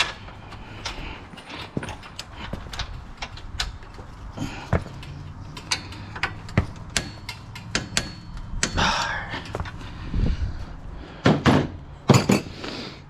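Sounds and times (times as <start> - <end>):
metal clicks and knocks from tools: 0.0 - 9.8.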